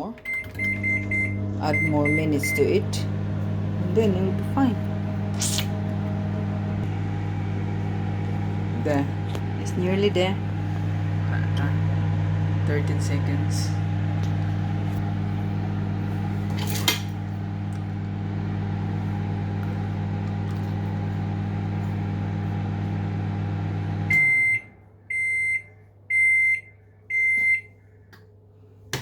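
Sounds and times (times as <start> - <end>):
microwave oven humming: 0.0 - 29.0
microwave click: 0.2 - 3.8
microwave beeps: 0.2 - 4.3, 24.0 - 27.8.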